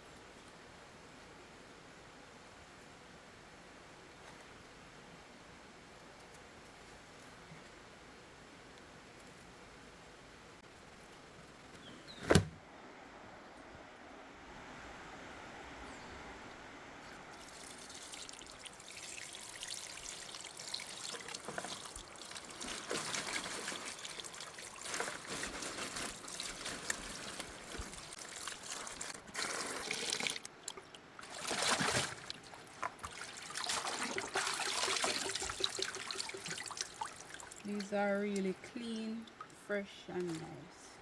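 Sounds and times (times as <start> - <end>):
water trickling and splashing: 17.1 - 39.6.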